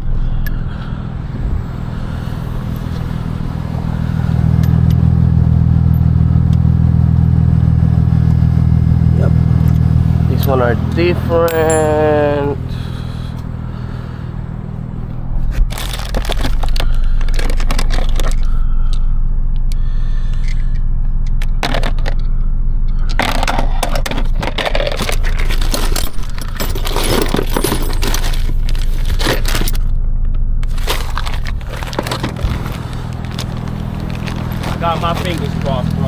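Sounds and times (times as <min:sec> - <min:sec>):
engine idling hum: 0:00.0 - 0:36.0
metal tools clinking and scraping: 0:10.4 - 0:12.8, 0:23.2 - 0:29.9, 0:30.6 - 0:36.0.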